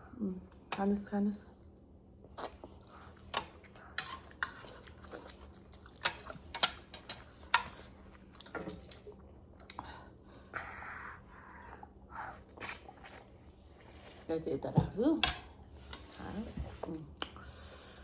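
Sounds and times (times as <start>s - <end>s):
person chewing: 2.3s - 9.8s.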